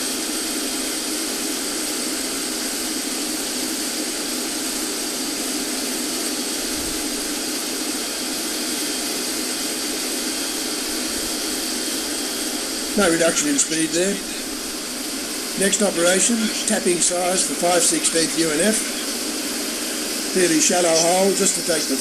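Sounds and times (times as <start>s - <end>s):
lathe whirring with high whine: 0.0s - 22.0s.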